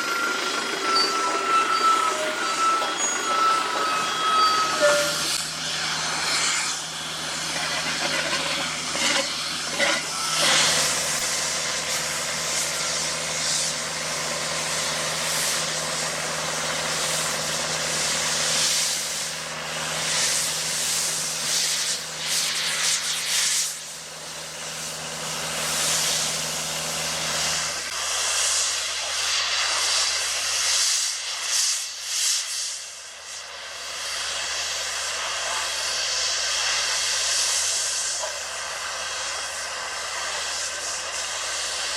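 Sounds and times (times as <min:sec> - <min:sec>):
heavy diesel machinery running: 0:00.0 - 0:41.9.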